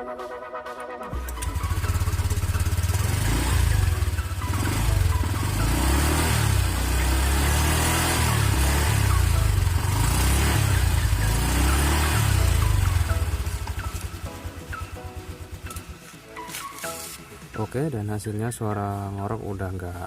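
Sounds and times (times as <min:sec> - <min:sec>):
scooter engine running: 0:01.2 - 0:17.2.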